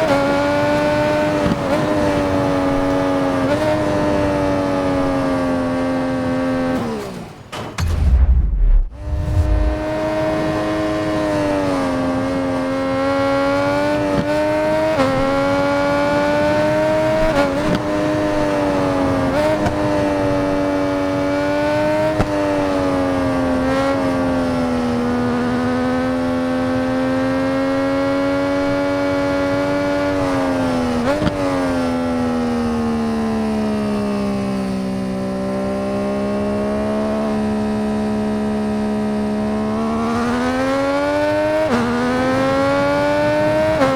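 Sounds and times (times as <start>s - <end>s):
motorcycle engine droning: 0.0s - 43.9s.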